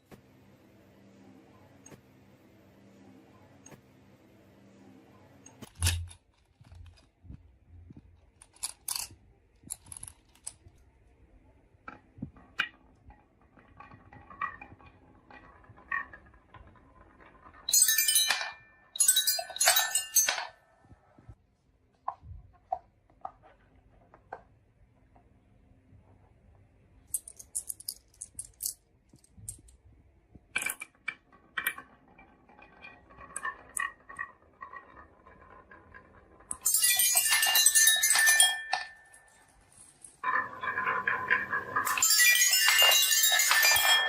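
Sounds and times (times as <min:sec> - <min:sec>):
marbles clattering down a run: 0:11.9 - 0:20.6, 0:30.6 - 0:44.0.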